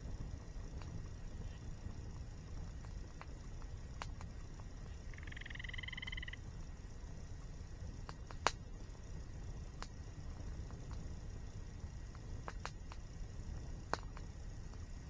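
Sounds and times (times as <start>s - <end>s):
campfire crackling and popping: 0.0s - 15.0s
small animal trilled call: 4.9s - 6.5s.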